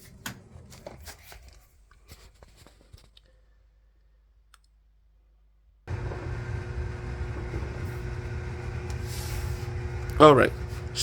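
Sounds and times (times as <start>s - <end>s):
machine hum with low drone: 5.9s - 11.0s.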